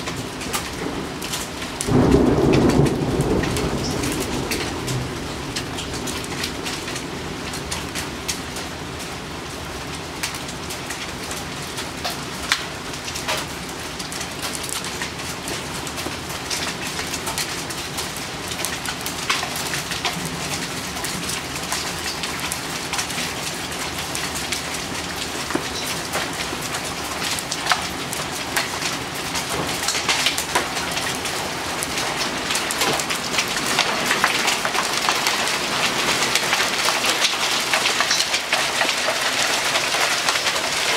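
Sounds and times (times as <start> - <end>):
rain and hail downpour: 0.0 - 40.9.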